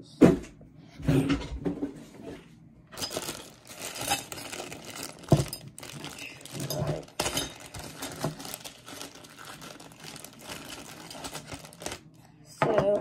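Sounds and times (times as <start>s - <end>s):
hardware clinking: 3.0s - 8.1s
packaging rustling: 3.0s - 12.2s.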